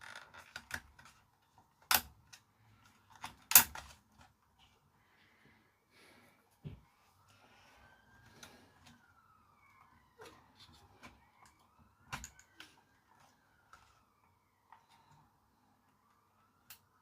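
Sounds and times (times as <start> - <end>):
faint siren rising and falling: 6.6 - 17.0.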